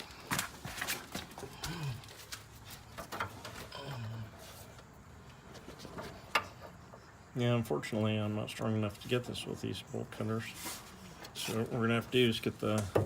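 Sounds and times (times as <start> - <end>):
person grunting: 1.6 - 2.1, 3.7 - 4.4.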